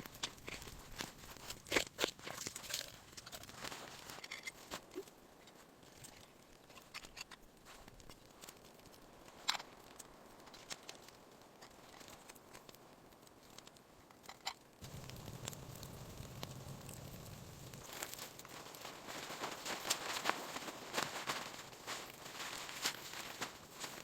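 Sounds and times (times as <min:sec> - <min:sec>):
low steady hum: 0:14.8 - 0:18.0.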